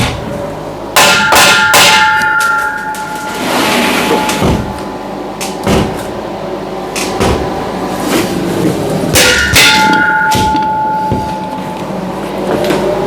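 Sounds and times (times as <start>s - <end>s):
metal knocking and clanking: 9.1s - 11.9s.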